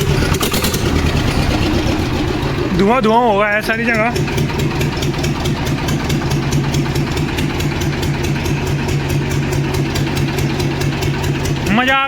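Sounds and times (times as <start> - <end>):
tractor diesel engine idling: 0.0 - 12.0.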